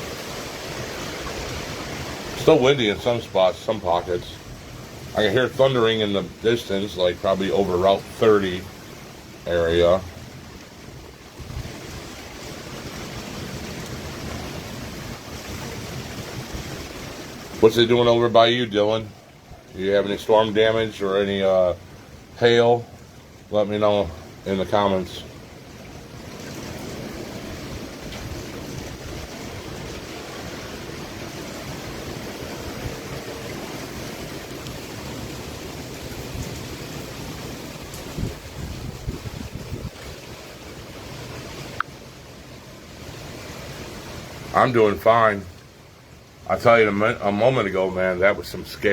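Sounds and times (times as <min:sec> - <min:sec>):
wind gusting against microphone: 0:00.0 - 0:45.7
wind buffeting microphone: 0:11.3 - 0:17.5, 0:26.6 - 0:40.4
wind noise: 0:11.3 - 0:17.7, 0:26.3 - 0:34.9, 0:36.0 - 0:40.5.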